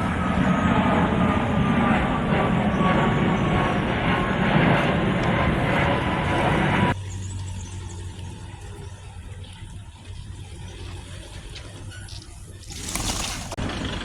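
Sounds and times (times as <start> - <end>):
city traffic noise: 4.8 - 14.0.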